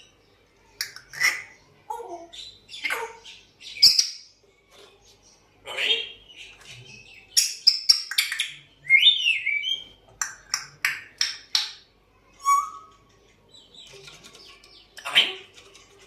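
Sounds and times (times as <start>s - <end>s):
parrot whistling: 12.4s - 12.9s.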